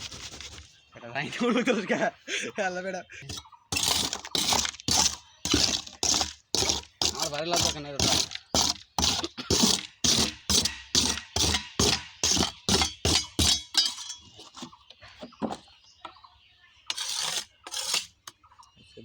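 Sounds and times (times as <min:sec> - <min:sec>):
rapid regular knocks: 0:03.3 - 0:13.8.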